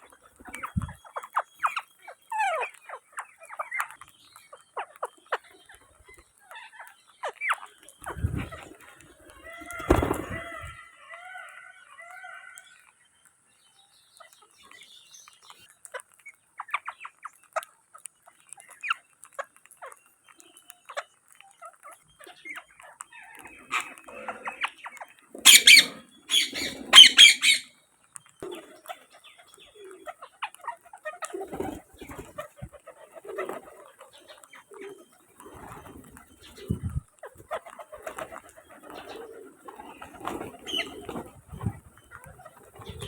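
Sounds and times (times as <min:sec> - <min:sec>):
parakeets chirping and clicking: 0:00.0 - 0:10.8, 0:14.0 - 0:43.0
parakeets squawking harshly: 0:25.4 - 0:27.7.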